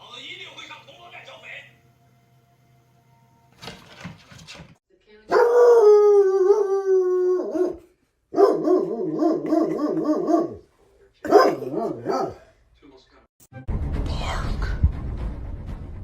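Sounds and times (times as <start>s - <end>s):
dog howling: 5.3s - 10.6s, 11.3s - 12.4s.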